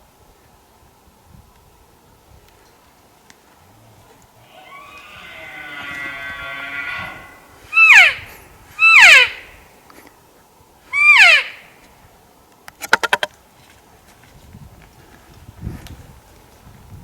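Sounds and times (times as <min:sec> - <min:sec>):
elk calling: 0:04.4 - 0:09.7, 0:10.9 - 0:11.8
short call pulses: 0:04.4 - 0:09.7, 0:10.9 - 0:11.8.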